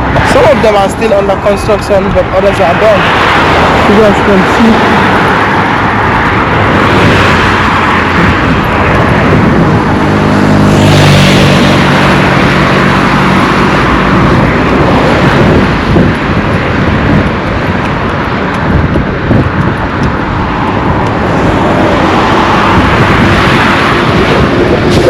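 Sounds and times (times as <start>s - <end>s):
engine hum: 0.0s - 25.0s
motor vehicles passing: 0.0s - 25.0s.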